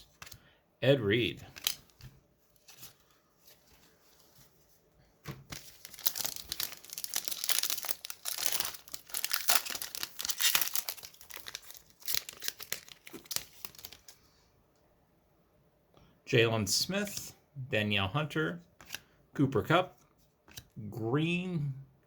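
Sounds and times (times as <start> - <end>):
wrapper tearing and crinkling: 5.5 - 14.2.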